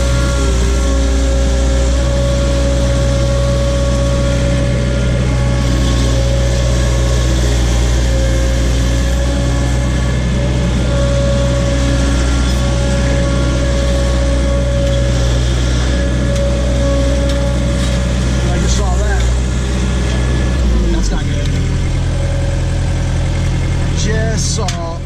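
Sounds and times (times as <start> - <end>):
backhoe engine running: 0.0 - 25.0.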